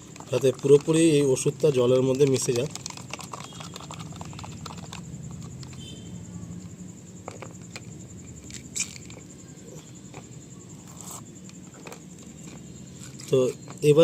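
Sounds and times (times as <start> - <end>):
stirring clicks and scrapes: 0.0 - 1.4, 2.0 - 5.8.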